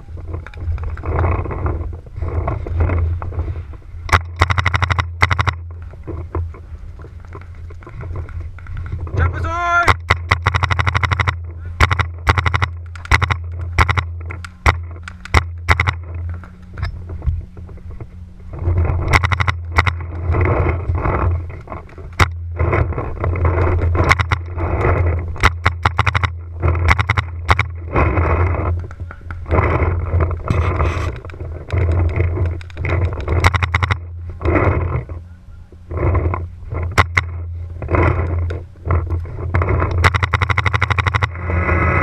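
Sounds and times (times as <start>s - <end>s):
wind buffeting microphone: 0.0s - 4.4s, 5.0s - 9.5s, 11.3s - 40.6s
paintball markers popping: 9.9s - 16.8s, 23.5s - 34.6s.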